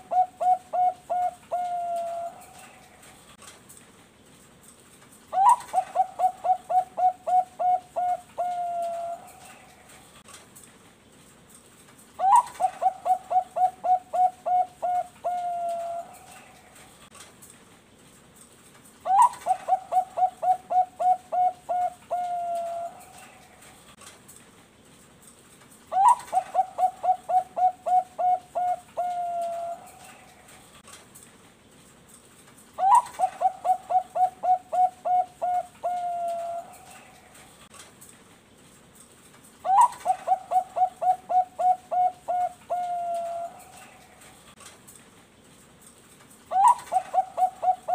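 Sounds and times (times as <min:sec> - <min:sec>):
dove cooing song: 0:00.0 - 0:03.2, 0:05.3 - 0:10.1, 0:12.2 - 0:16.9, 0:19.0 - 0:23.8, 0:25.9 - 0:30.6, 0:32.8 - 0:37.5, 0:39.6 - 0:44.4, 0:46.5 - 0:47.9.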